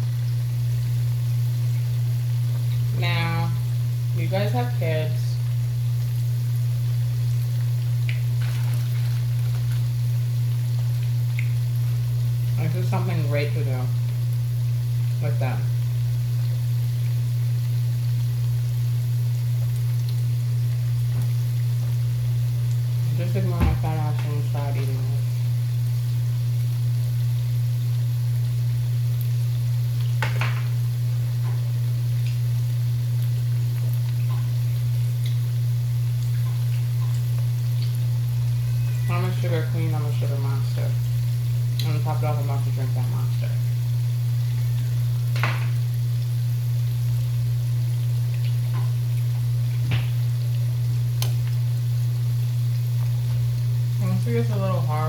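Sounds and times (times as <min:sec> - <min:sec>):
dough frying in hot oil: 0:00.0 - 0:55.0
steady low hum: 0:00.0 - 0:55.0
sharp popping of oil: 0:45.3 - 0:45.9.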